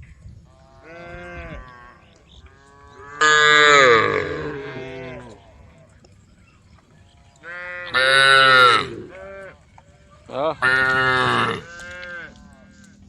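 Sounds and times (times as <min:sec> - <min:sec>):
cows mooing: 0:02.6 - 0:05.7, 0:07.4 - 0:09.6, 0:10.4 - 0:13.0.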